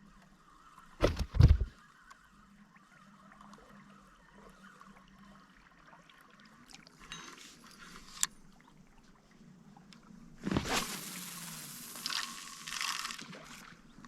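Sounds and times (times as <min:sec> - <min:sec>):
river water lapping and trickling: 0:00.0 - 0:01.0, 0:01.6 - 0:14.0.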